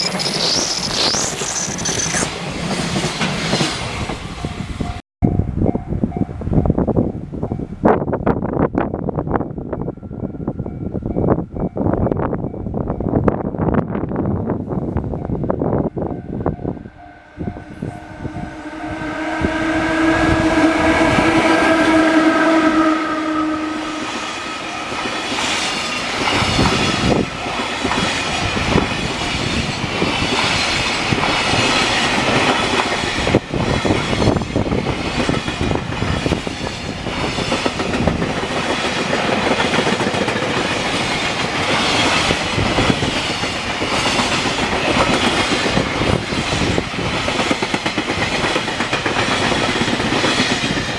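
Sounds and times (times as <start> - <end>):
locomotive horn blast: 16.9 - 24.9
train wheels clattering on rails: 24.5 - 50.9.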